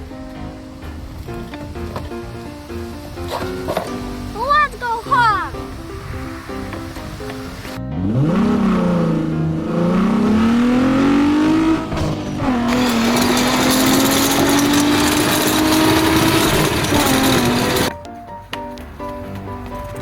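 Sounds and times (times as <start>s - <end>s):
car engine revving: 0.7s - 17.9s
rushing hiss: 0.8s - 7.8s.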